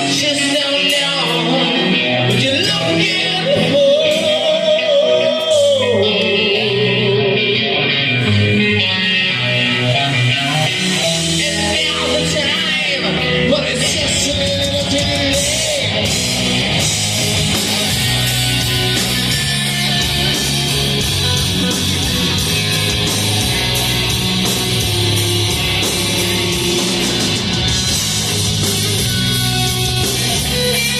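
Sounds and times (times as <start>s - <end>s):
bending electric guitar line: 0.0s - 30.9s
hard rock band playing: 0.0s - 30.9s.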